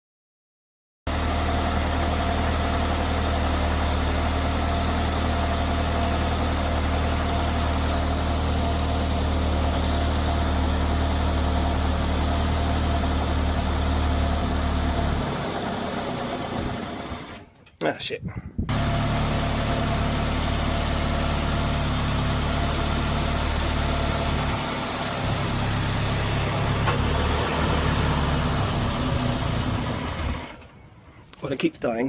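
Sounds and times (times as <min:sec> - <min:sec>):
car engine idling: 0:01.1 - 0:17.4, 0:18.7 - 0:31.4.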